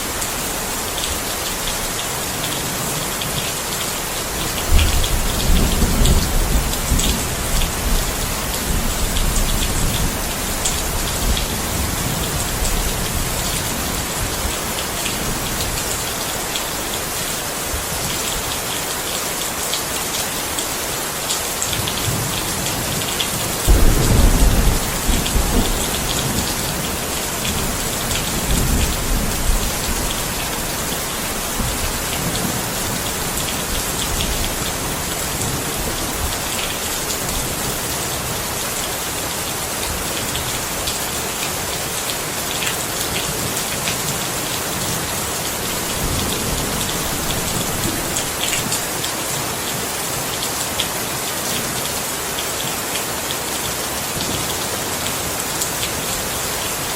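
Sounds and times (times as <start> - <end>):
heavy rain pattering: 0.0 - 56.9
thunder rumbling: 23.6 - 36.6.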